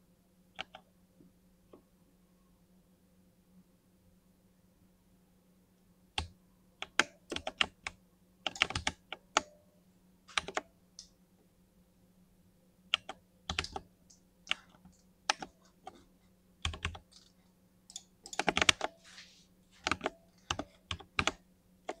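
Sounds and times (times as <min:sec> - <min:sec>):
mechanical keyboard typing: 0:06.2 - 0:09.5, 0:10.4 - 0:10.6, 0:12.9 - 0:13.8, 0:14.5 - 0:16.0, 0:16.6 - 0:19.0, 0:19.8 - 0:22.0.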